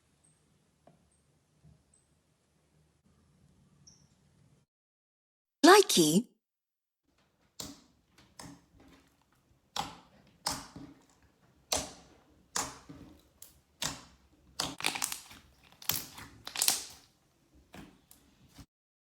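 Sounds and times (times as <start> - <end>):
slime squished by hand: 11.7 - 17.1.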